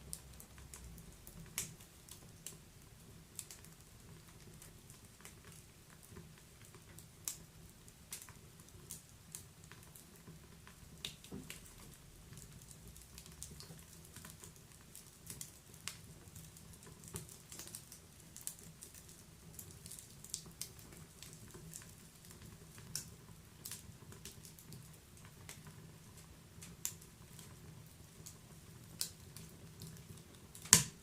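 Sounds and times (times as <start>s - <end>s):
low rumble of burning: 0.0s - 31.0s
wood fire crackling: 0.0s - 31.0s.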